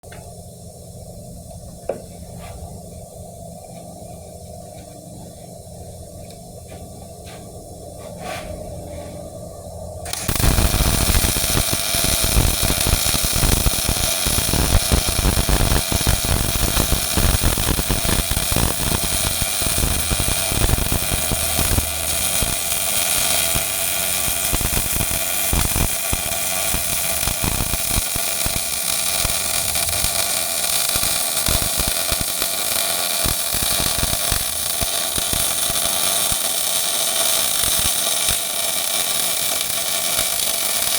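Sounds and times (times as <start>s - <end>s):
welding arc crackling: 10.0s - 40.9s.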